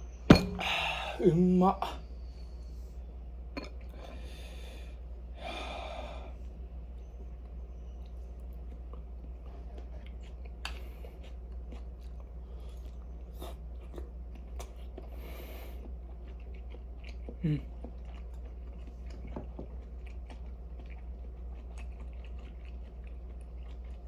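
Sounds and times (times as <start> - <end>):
steady low hum: 0.0 - 24.0
breathy exhalations: 0.5 - 1.2, 3.9 - 6.4
person chewing: 7.0 - 24.0.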